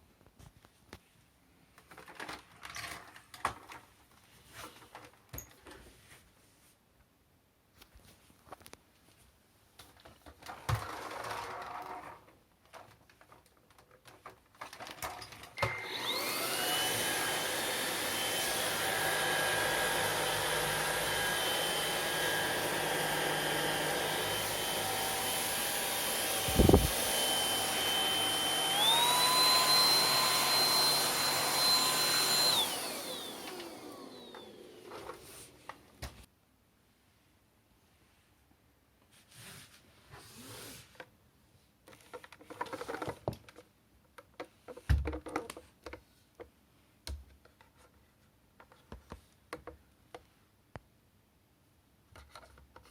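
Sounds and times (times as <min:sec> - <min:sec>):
vacuum motor whining: 0:15.6 - 0:35.6.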